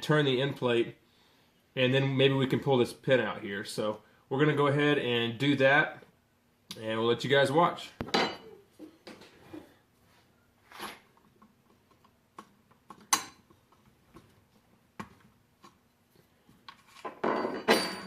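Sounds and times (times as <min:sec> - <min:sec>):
metal clinks and scraping: 0:16.9 - 0:18.0.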